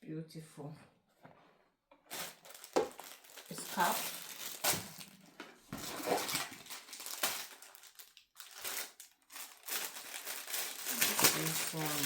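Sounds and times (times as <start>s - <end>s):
gift packaging crinkling: 2.1s - 12.0s.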